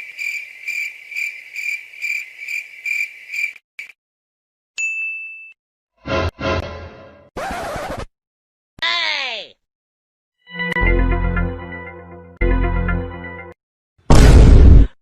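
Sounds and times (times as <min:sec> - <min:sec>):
cricket chirping: 0:00.0 - 0:03.9
short ding: 0:04.8 - 0:05.6
loud sound effect: 0:14.1 - 0:15.0.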